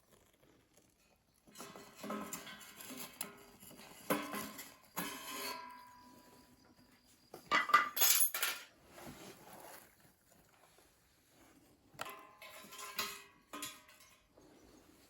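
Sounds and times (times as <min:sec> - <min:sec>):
metal cookware clinking: 0:12.0 - 0:14.3.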